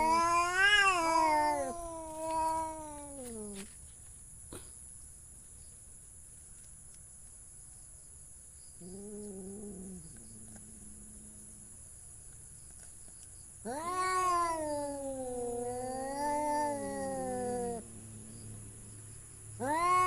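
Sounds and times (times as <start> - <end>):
cat meowing: 0.0 - 3.6, 13.6 - 17.8, 19.6 - 20.0.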